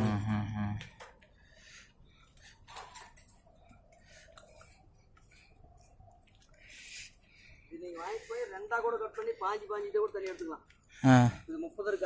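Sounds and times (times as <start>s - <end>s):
metallic clicks of wire cage: 2.6s - 3.5s.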